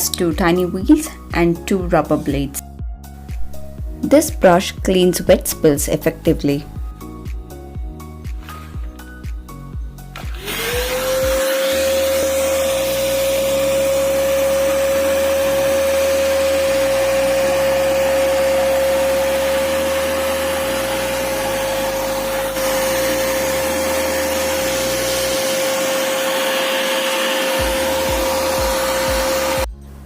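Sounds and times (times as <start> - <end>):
vacuum cleaner running: 10.2 - 29.7.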